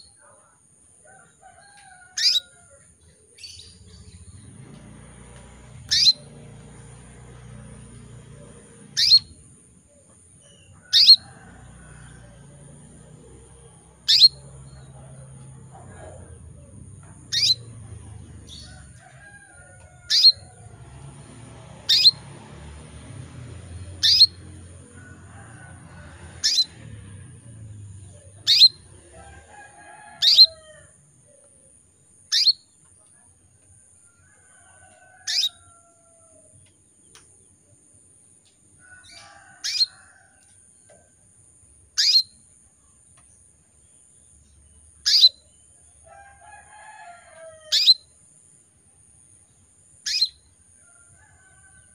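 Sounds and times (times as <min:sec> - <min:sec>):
canary call notes: 0:02.2 - 0:02.5, 0:05.6 - 0:06.6, 0:07.8 - 0:09.5, 0:10.4 - 0:12.2, 0:13.0 - 0:17.8, 0:19.8 - 0:20.8, 0:21.4 - 0:22.4, 0:23.9 - 0:24.5, 0:26.4 - 0:26.9, 0:28.0 - 0:29.1, 0:30.2 - 0:30.6, 0:32.2 - 0:32.7, 0:35.3 - 0:35.7, 0:39.0 - 0:39.9, 0:42.0 - 0:42.4, 0:45.0 - 0:45.5, 0:47.7 - 0:48.1, 0:50.0 - 0:50.4.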